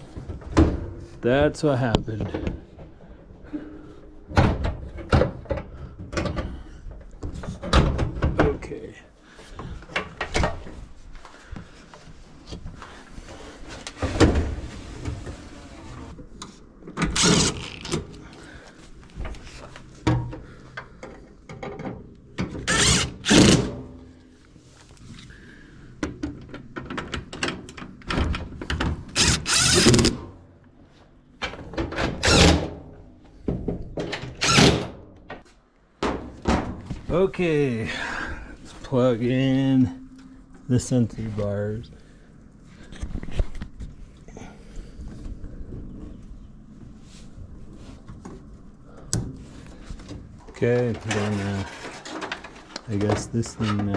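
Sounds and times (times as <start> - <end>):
metal dryer parts clunking: 50.1 - 53.9.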